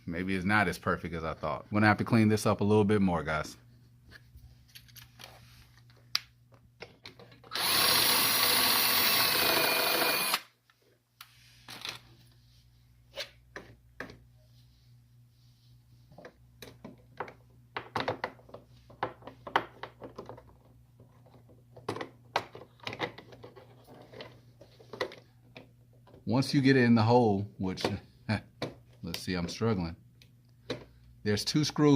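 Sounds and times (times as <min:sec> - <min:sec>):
power drill running: 0:07.5 - 0:10.5.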